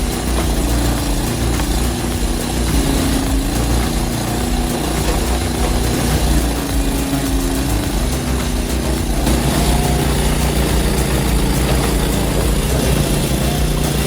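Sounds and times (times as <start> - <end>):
machine engine running: 0.0 - 14.0.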